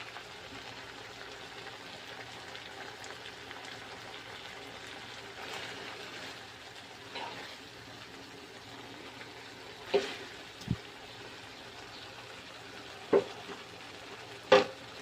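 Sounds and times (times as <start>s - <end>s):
food simmering in a pan: 0.0s - 15.0s
faint knock: 13.1s - 13.4s.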